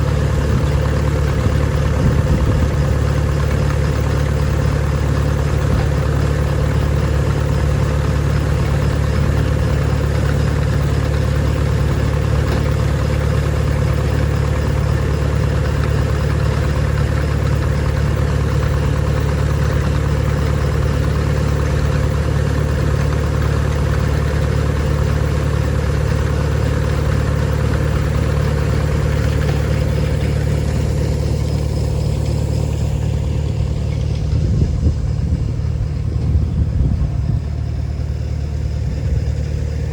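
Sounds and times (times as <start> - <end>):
feed grinder humming: 27.6 - 39.9.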